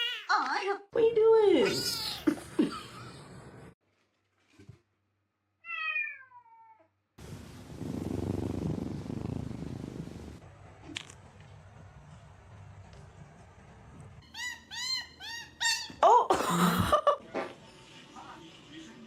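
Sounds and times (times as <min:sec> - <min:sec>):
cat meowing: 0:05.6 - 0:06.9.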